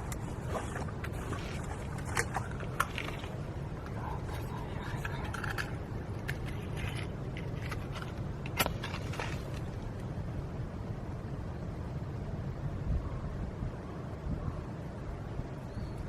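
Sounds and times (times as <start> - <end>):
scraping and handling noises: 0.0 - 9.9
low background rumble: 0.0 - 16.0.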